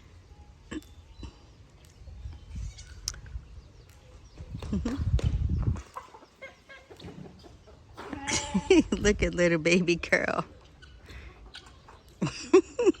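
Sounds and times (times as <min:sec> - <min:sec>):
farm animals bleating: 0:08.0 - 0:09.0.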